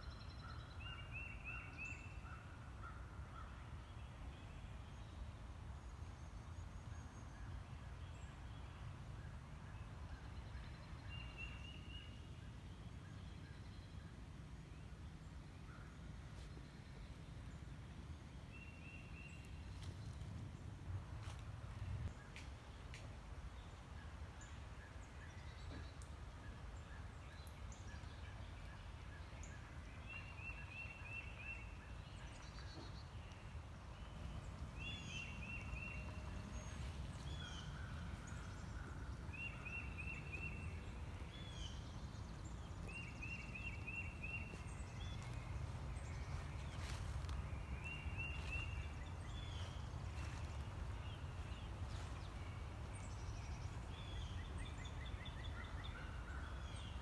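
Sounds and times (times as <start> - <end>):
low steady rumble: 33.5 - 56.9
bird chirping: 34.0 - 57.0.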